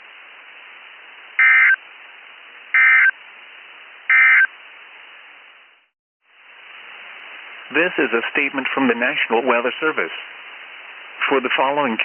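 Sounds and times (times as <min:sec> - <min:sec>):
receiver hiss: 0:00.0 - 0:12.0
two-tone data squawks: 0:01.4 - 0:01.8, 0:02.8 - 0:03.2, 0:04.1 - 0:04.5.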